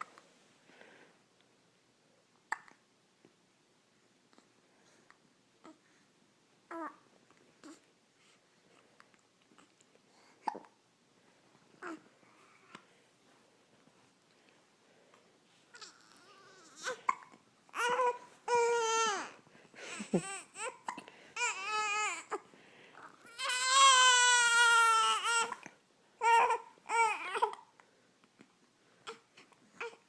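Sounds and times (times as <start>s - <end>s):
baby hiccups: 2.5s - 2.8s.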